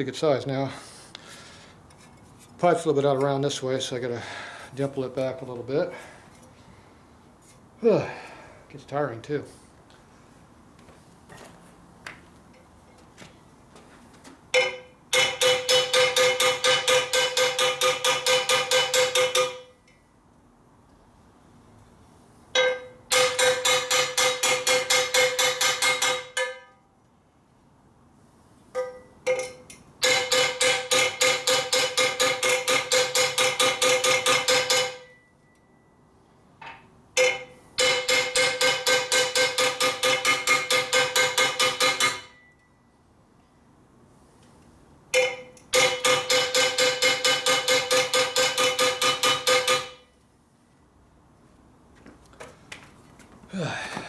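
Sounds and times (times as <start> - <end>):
hammer beating on metal pipe: 14.6 - 19.8, 22.6 - 26.8, 28.8 - 35.2, 37.2 - 42.5, 45.2 - 50.1.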